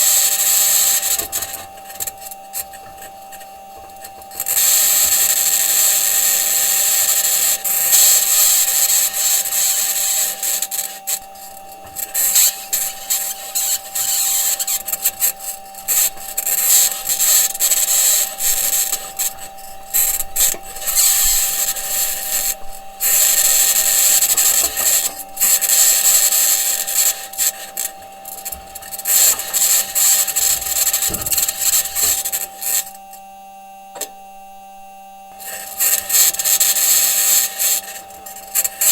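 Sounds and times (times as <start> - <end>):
high-pitched scratching: 10.8 - 32.9
rover wheels on ground: 11.0 - 33.0.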